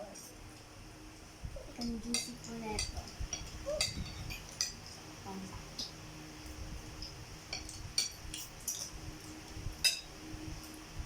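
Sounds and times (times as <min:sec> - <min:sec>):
cutlery clinking on a plate: 0:09.8 - 0:10.1.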